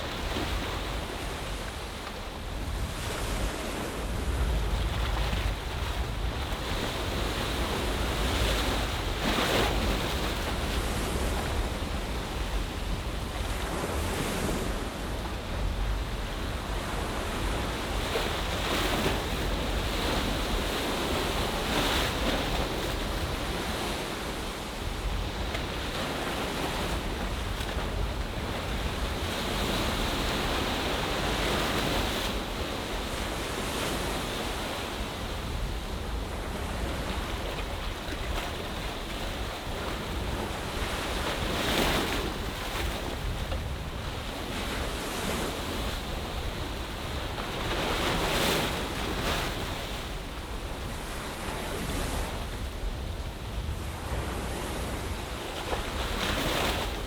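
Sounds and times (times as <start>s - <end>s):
ocean waves on shore: 0.0s - 57.0s
wind rumbling on microphone: 0.0s - 57.0s.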